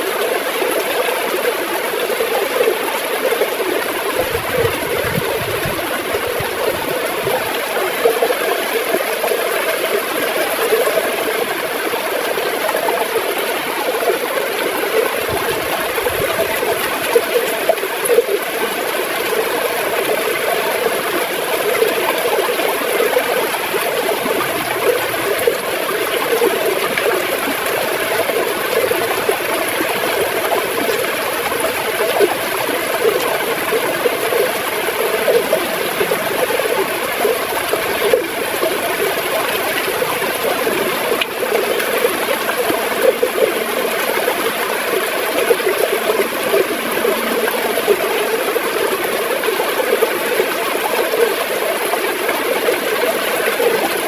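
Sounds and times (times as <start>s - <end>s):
river water flowing over stones: 0.0s - 54.0s.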